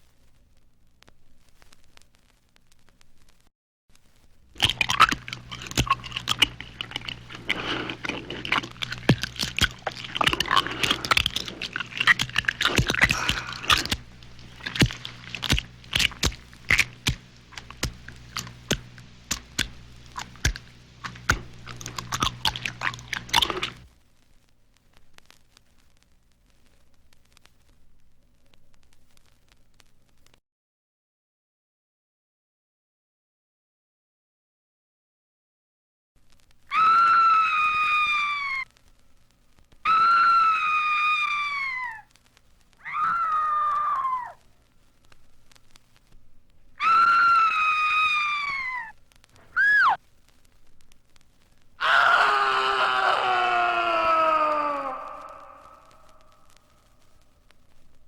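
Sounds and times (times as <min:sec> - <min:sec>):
crackling clicks: 0:00.0 - 0:30.4, 0:36.2 - 0:58.0
low steady hum: 0:00.0 - 0:30.4, 0:36.2 - 0:58.0
long high-pitched screams: 0:36.7 - 0:38.7, 0:39.8 - 0:42.1, 0:42.8 - 0:44.4, 0:46.8 - 0:50.0, 0:51.8 - 0:56.6.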